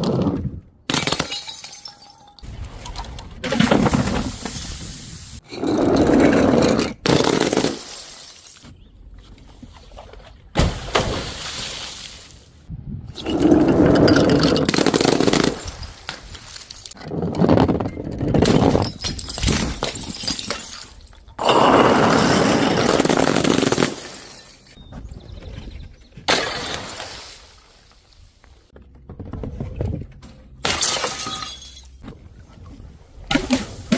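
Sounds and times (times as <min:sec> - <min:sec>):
glass bottles breaking: 0:00.9 - 0:03.9, 0:18.4 - 0:21.4, 0:22.9 - 0:24.8, 0:30.6 - 0:32.0.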